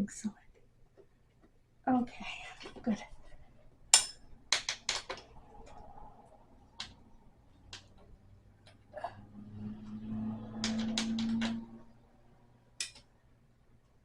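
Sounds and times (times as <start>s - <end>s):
hardware clicks and taps: 3.9s - 5.3s.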